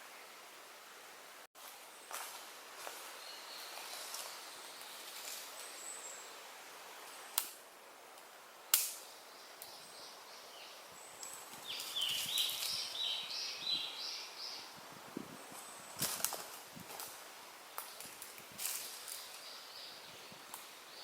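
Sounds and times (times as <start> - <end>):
sharp snaps: 7.1 - 7.6, 8.2 - 9.8
bird chirping: 9.0 - 14.7.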